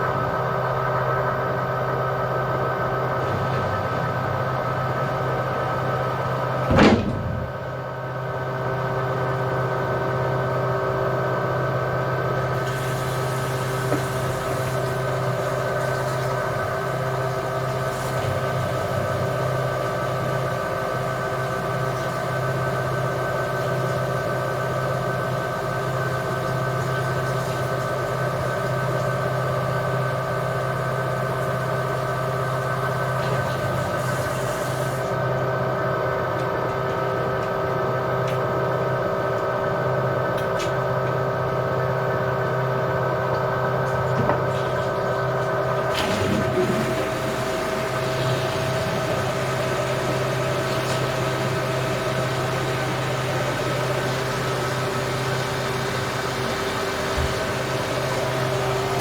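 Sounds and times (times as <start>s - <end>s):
washing machine drum spinning: 0.0s - 59.0s
loud thump: 6.7s - 7.6s.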